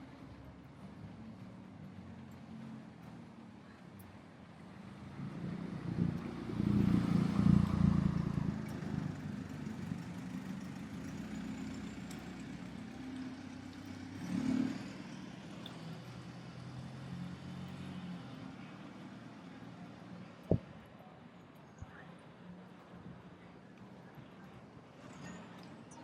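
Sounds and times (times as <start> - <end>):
vehicles passing close by: 0.0 - 26.0.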